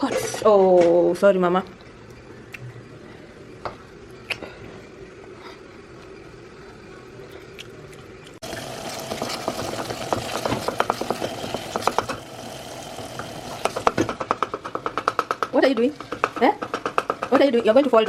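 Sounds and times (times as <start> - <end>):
stew bubbling: 7.2 - 14.0.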